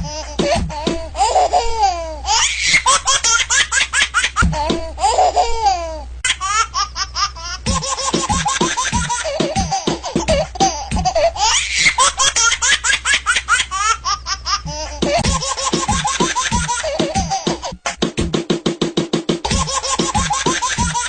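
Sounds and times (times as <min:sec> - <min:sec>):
music: 0:00.0 - 0:01.8, 0:07.7 - 0:11.3, 0:14.6 - 0:21.0
baby laughing: 0:00.0 - 0:17.8, 0:19.4 - 0:21.0.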